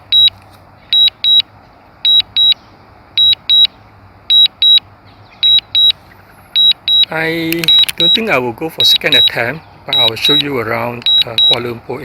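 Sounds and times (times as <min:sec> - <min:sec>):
high-pitched double beeps: 0:00.9 - 0:01.4, 0:02.1 - 0:02.6, 0:03.2 - 0:03.7, 0:04.3 - 0:04.8, 0:05.4 - 0:06.0, 0:06.6 - 0:11.6.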